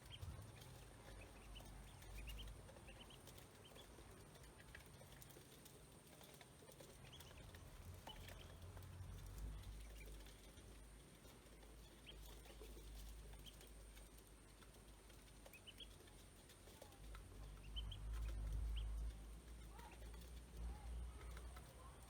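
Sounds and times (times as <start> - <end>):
ducklings peeping: 0.0 - 4.9, 6.7 - 8.9, 9.5 - 14.0, 15.2 - 20.1.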